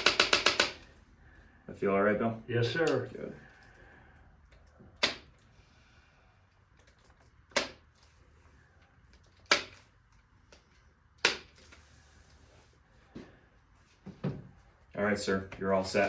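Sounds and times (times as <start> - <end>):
adjusting instrument clicks: 4.5 - 5.5.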